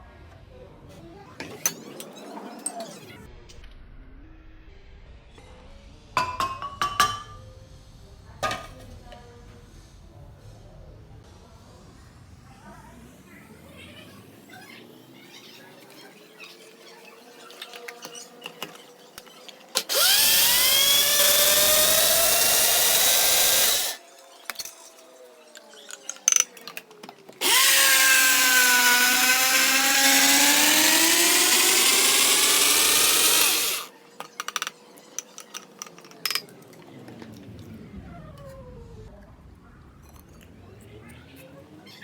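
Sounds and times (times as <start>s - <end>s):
appliance motor whirring: 17.4s - 26.4s, 27.4s - 36.4s.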